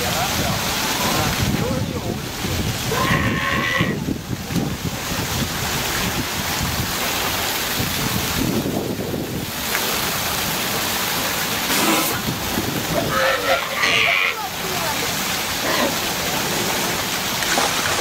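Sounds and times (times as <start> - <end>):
wind on microphone: 0.0 - 10.6, 11.9 - 13.5
water noise: 0.0 - 18.0.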